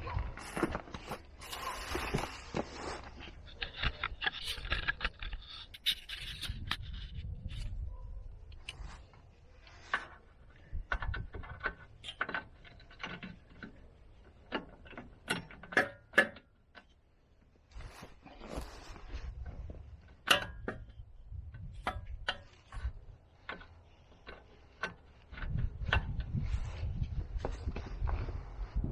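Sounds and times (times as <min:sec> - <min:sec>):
sharp clicks and knocks: 0:09.6 - 0:17.5, 0:18.9 - 0:28.2.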